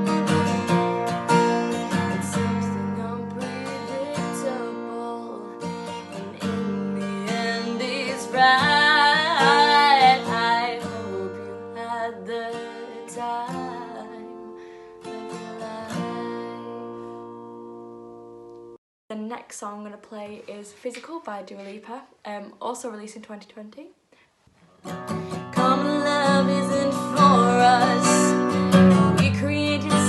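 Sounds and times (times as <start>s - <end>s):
acoustic guitar strummed: 0.0s - 18.8s, 24.8s - 30.0s
person singing: 1.8s - 14.6s, 25.3s - 30.0s.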